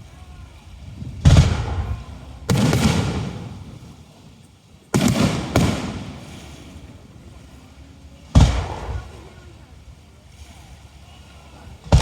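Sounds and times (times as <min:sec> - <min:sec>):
firework shells booming: 0:01.1 - 0:04.0, 0:04.9 - 0:07.0, 0:08.4 - 0:09.2.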